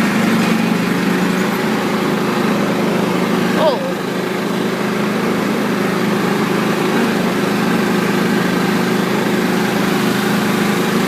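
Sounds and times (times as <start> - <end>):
riding mower engine running: 0.0 - 11.0.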